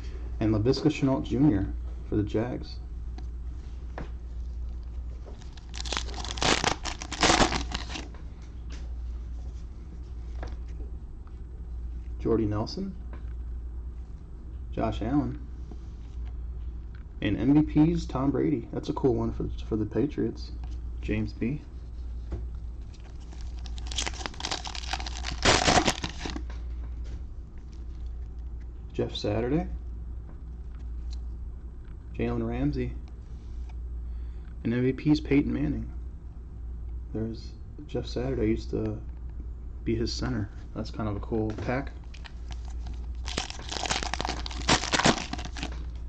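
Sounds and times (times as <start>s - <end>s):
cellophane wrapper crinkling: 5.4s - 8.0s, 22.8s - 26.4s, 42.0s - 45.9s.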